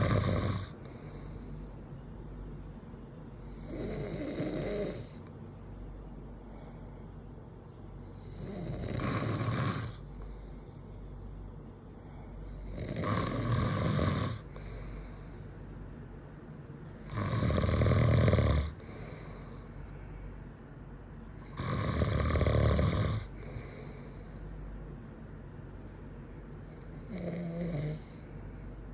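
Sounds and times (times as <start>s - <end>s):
man snoring: 0.0s - 0.9s, 3.4s - 5.2s, 8.1s - 10.1s, 12.4s - 14.8s, 17.0s - 19.3s, 21.4s - 23.9s, 26.7s - 28.3s
soft breath: 0.7s - 2.0s, 6.2s - 8.4s, 10.0s - 12.8s, 14.4s - 15.9s, 18.7s - 21.5s, 23.2s - 24.9s.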